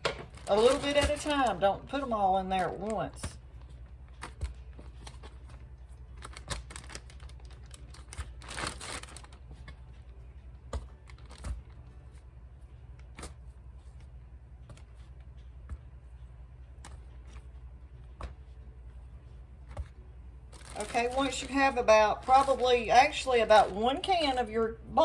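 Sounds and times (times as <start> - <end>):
plastic bag clicks and rustles: 0.0 - 2.0, 6.2 - 9.4, 10.9 - 11.8, 20.5 - 22.7
plastic bag crinkle: 0.0 - 3.3, 6.1 - 9.6, 10.9 - 11.8, 20.5 - 23.8.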